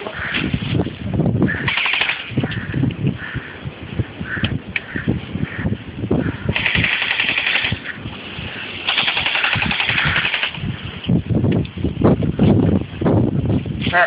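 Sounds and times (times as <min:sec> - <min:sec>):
airsoft rifle full-auto bursts: 0:01.6 - 0:02.3, 0:06.6 - 0:07.8, 0:08.8 - 0:10.6.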